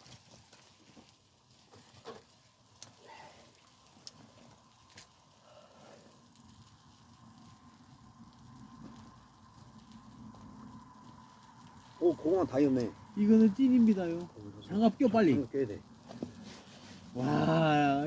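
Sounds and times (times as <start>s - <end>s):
wood fire crackling: 0.0s - 18.0s
sharp fire pops: 6.2s - 18.0s.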